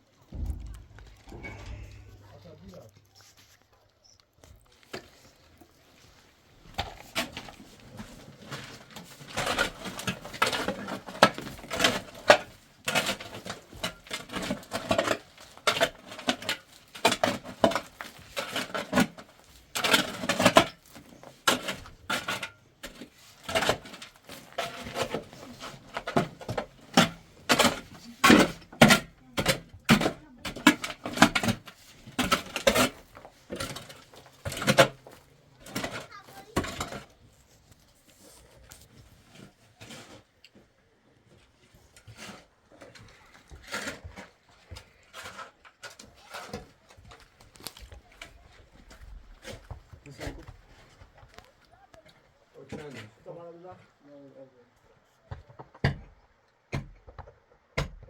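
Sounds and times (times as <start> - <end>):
hard objects clattering: 0.3 - 3.5, 6.7 - 40.4.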